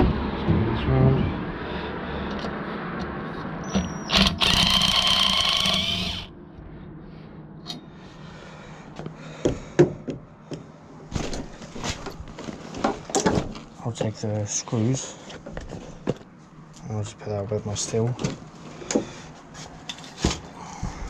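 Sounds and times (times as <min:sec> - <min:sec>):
parts clicking and knocking: 0:03.8 - 0:06.3
power drill running: 0:04.1 - 0:06.3.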